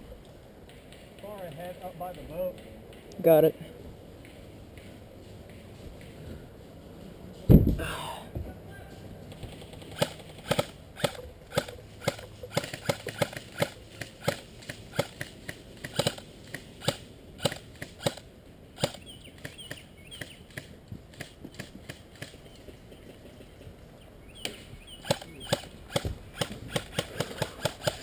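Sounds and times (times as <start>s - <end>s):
airsoft guns popping: 9.3s - 18.2s, 24.4s - 28.0s.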